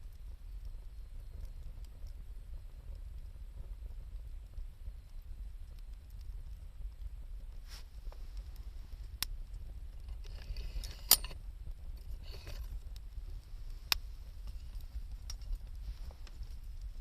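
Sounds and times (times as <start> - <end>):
fire crackling pops: 0.0 - 17.0
fire hissing: 0.0 - 17.0
wood fire rumbling: 0.0 - 17.0.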